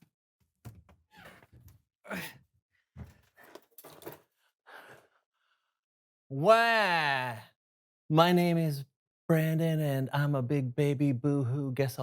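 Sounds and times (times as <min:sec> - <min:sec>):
person sighing and groaning: 0:02.1 - 0:02.4.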